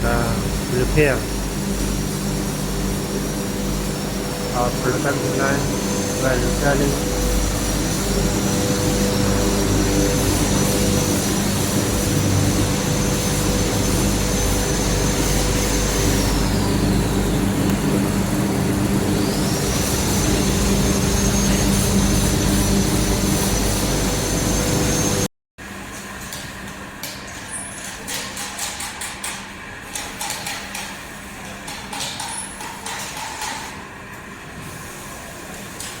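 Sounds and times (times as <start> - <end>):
high machine whine: 0.0 - 25.3
workshop machinery drone: 0.0 - 36.0.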